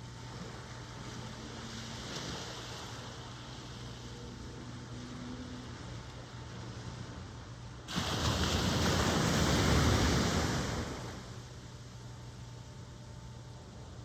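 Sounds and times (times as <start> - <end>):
sea hiss: 7.9 - 11.3
wave breaking: 7.9 - 11.4.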